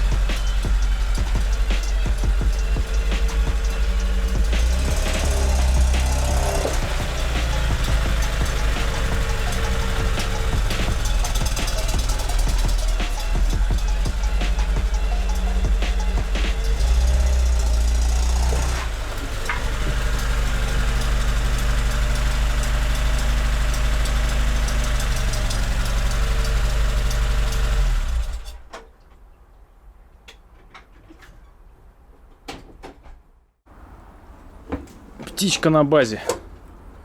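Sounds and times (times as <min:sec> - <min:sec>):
car engine running: 0:00.0 - 0:28.6.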